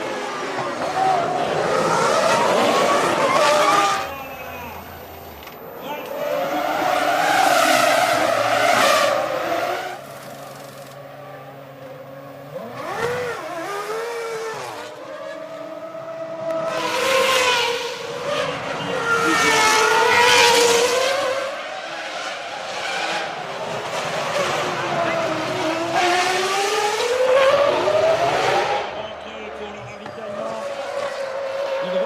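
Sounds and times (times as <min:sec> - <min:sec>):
racing car engines passing: 0:00.0 - 0:32.0.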